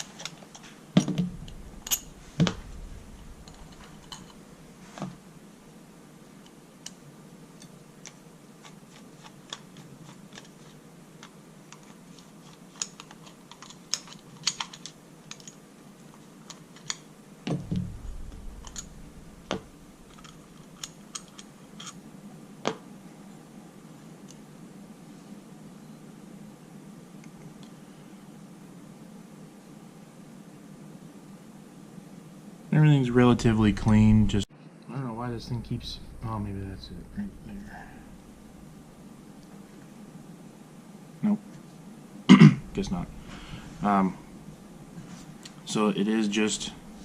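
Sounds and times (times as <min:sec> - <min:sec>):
heavier knocks: 0:01.0 - 0:05.2, 0:17.5 - 0:20.2.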